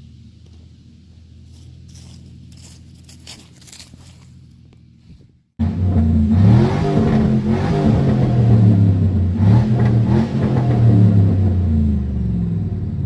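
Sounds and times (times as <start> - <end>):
faint low hum: 0.0 - 6.4
loud engine revving: 5.6 - 13.0.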